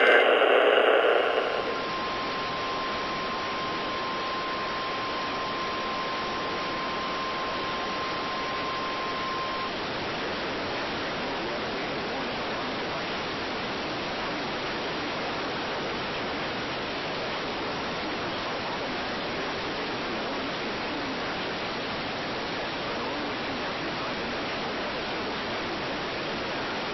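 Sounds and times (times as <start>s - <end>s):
static hiss: 0.0s - 9.8s
steady tone: 0.0s - 9.9s.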